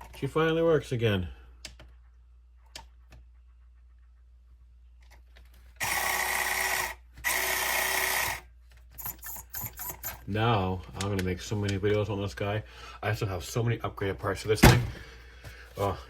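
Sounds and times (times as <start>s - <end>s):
small electric motor whining: 5.8s - 8.4s.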